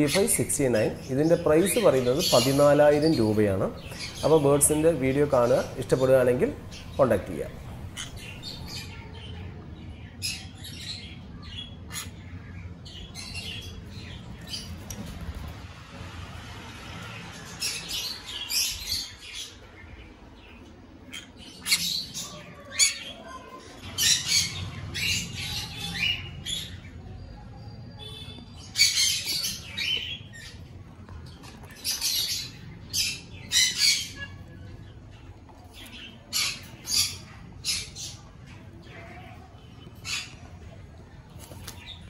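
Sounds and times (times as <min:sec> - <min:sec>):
parrots squawking harshly: 0:07.6 - 0:08.8, 0:11.9 - 0:12.2.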